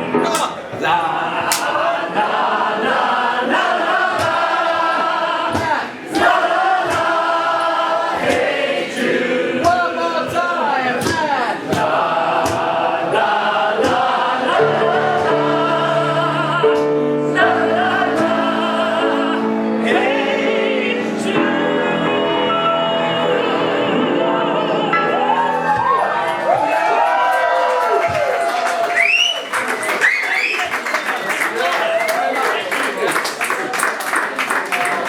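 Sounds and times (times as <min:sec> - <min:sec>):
voices singing together: 0:00.0 - 0:26.8
low held chords: 0:14.4 - 0:26.6.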